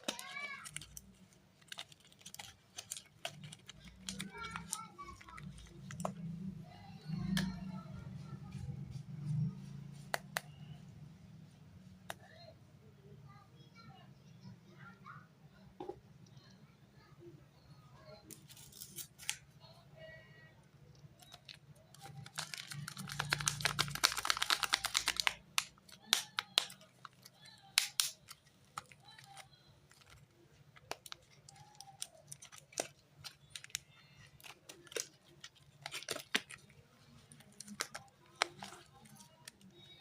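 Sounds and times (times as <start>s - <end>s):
packaging crinkling: 0.0s - 6.2s, 21.2s - 40.0s.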